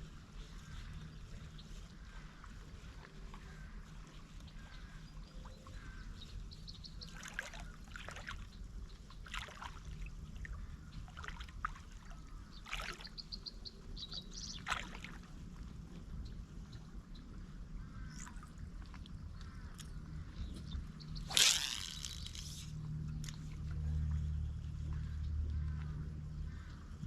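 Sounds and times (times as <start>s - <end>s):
low wind rumble: 0.0s - 27.0s
water splashes and drips: 7.0s - 15.8s.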